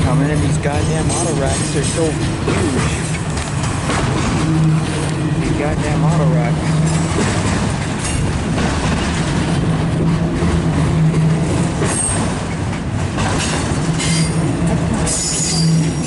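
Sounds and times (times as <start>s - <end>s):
train wheels rumbling on rail: 0.0s - 16.0s
high wheel squeals: 15.0s - 16.0s.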